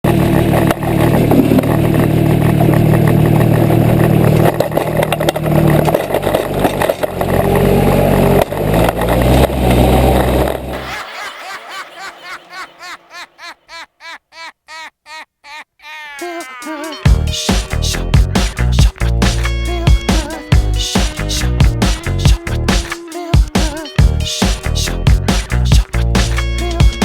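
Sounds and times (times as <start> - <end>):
loud engine running: 0.0 - 10.9, 17.1 - 22.8
electronic music beat: 16.2 - 27.0.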